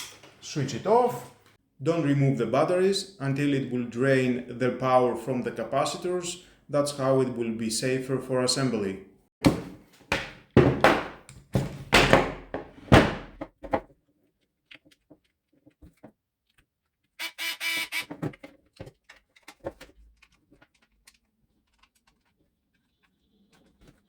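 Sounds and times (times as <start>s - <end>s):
plastic parts knocking and clattering: 9.4s - 16.7s, 18.1s - 24.0s.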